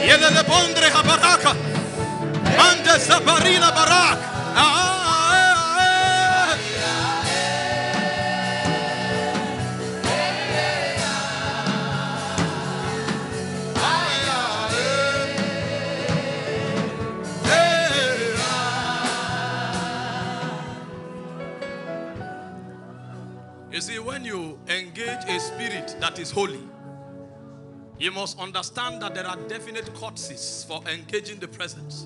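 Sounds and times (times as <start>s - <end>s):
gospel worship singing: 0.0s - 22.2s
low musical accompaniment: 0.0s - 32.0s.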